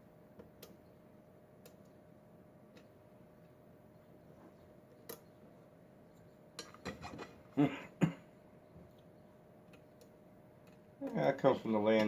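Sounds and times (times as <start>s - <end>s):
small metallic clicks and rattles: 9.6s - 12.0s.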